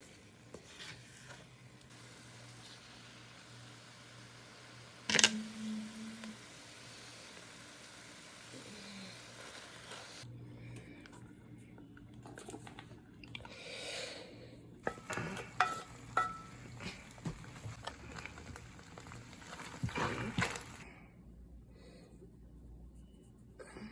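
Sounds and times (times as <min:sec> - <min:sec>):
utensil clinking against dishes: 0:14.9 - 0:16.7.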